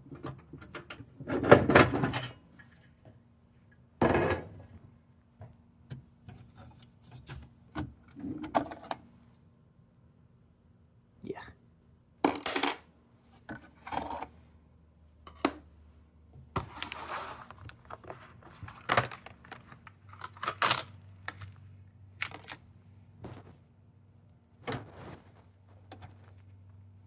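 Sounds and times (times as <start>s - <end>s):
scrape: 16.6s - 18.3s, 24.7s - 26.2s.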